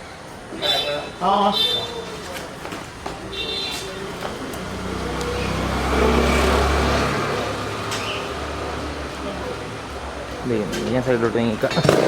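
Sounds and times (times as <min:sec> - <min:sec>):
road noise: 0:00.0 - 0:12.0.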